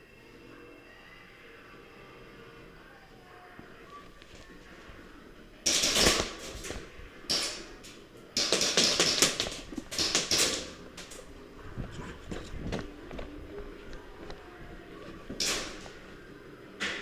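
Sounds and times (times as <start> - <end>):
airsoft guns firing bursts: 5.7 - 6.5, 8.4 - 10.8.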